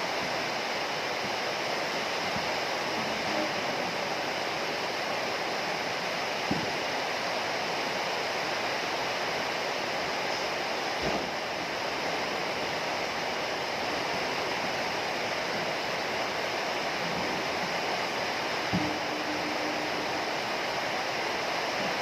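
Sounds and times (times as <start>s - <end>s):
heavy rain: 0.0s - 22.0s.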